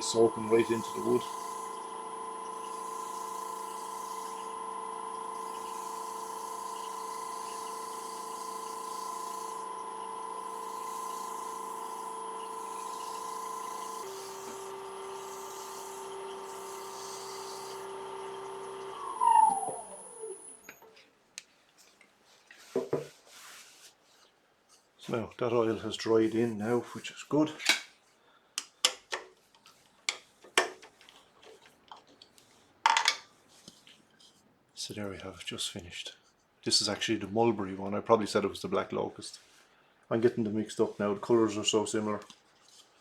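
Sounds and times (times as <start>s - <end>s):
wood lathe motor whine: 0.0s - 20.9s.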